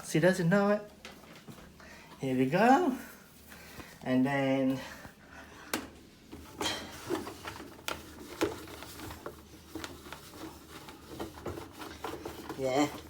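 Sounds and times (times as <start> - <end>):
wipe scrubbing washing machine drum: 6.2 - 13.0.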